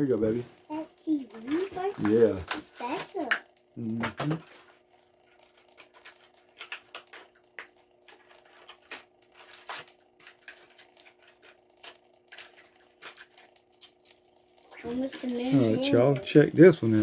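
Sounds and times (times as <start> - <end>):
plastic and cardboard crinkling: 4.1 - 17.0.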